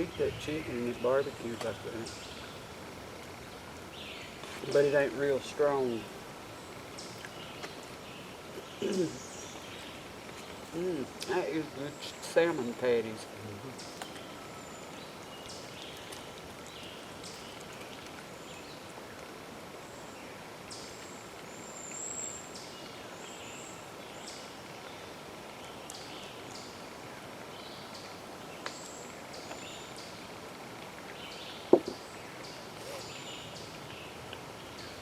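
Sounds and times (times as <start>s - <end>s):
outdoor hiss: 0.0s - 35.0s.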